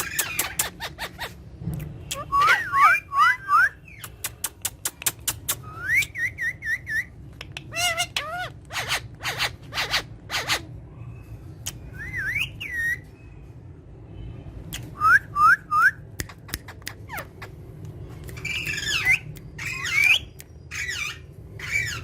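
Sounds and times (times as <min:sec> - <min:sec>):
parrots squawking and screeching: 0:00.0 - 0:13.1, 0:15.0 - 0:22.0
parrots whistling: 0:02.1 - 0:04.2, 0:05.3 - 0:07.1, 0:07.7 - 0:10.7, 0:11.7 - 0:13.1, 0:18.4 - 0:22.0
parrot sharp clicks: 0:04.0 - 0:05.7.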